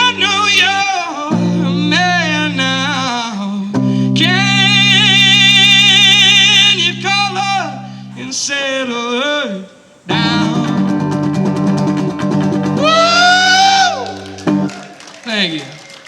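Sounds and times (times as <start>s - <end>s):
person singing wordless notes: 0.0s - 14.7s
acoustic guitar: 0.0s - 15.0s.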